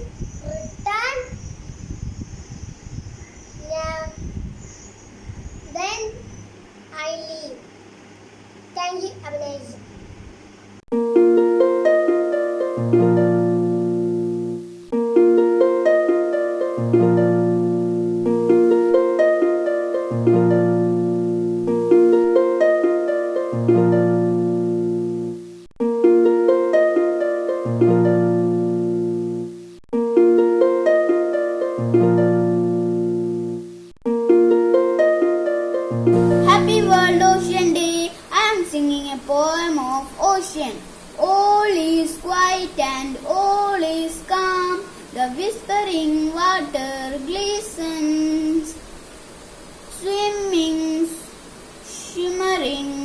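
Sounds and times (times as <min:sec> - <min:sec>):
sustained bass notes: 0:35.9 - 0:38.1
plucked-string arpeggios: 0:36.1 - 0:37.8.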